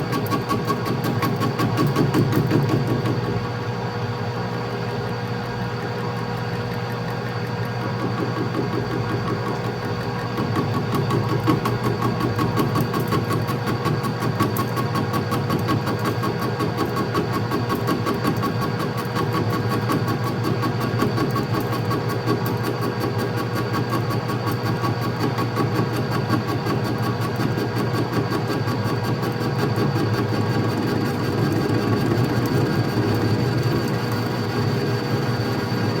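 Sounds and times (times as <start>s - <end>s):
lathe motor hum: 20.1s - 36.0s.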